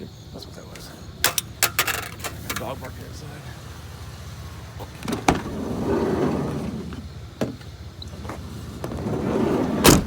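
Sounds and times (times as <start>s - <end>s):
car window rushing: 4.8s - 10.0s.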